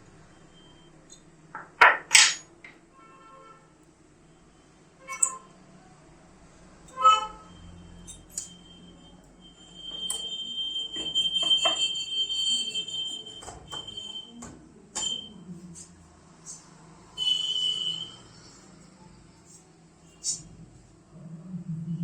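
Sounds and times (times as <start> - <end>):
multimeter continuity beep: 0.3 - 1.2, 7.5 - 14.4, 17.2 - 18.3.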